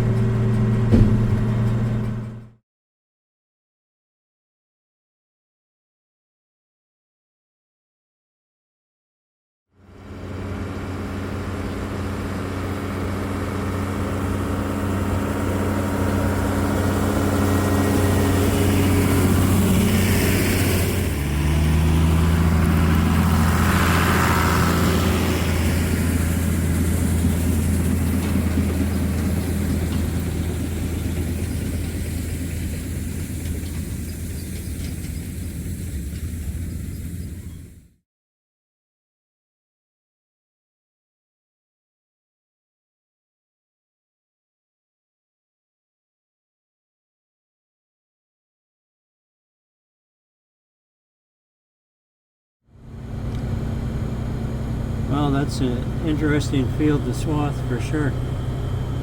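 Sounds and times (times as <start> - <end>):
engine running under load: 0.0 - 2.6, 9.8 - 38.0, 52.7 - 59.0.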